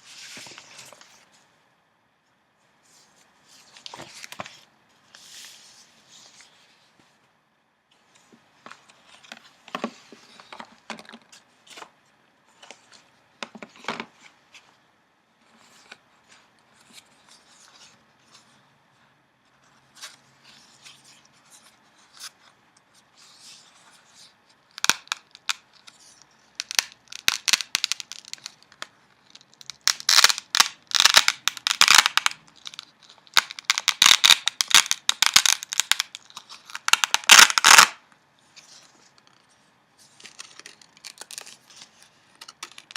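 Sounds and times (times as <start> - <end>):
paper pages rustling and crinkling: 0.0 - 1.4, 2.9 - 7.2, 38.4 - 42.9.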